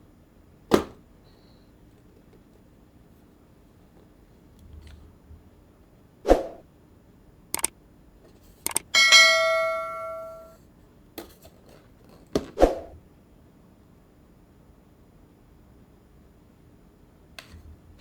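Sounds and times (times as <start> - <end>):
bell-like ring: 8.7 - 10.6.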